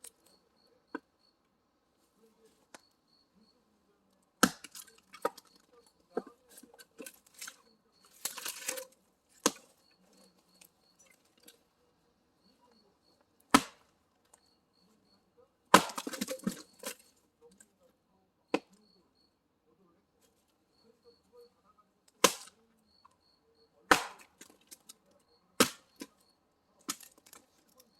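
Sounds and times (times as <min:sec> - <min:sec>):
axe splitting firewood: 0:04.4 - 0:10.2, 0:13.4 - 0:13.9, 0:15.7 - 0:17.1, 0:18.5 - 0:18.8, 0:22.1 - 0:22.6, 0:23.9 - 0:25.0, 0:25.6 - 0:26.2, 0:26.8 - 0:27.6
falling wood clatter: 0:15.8 - 0:17.0.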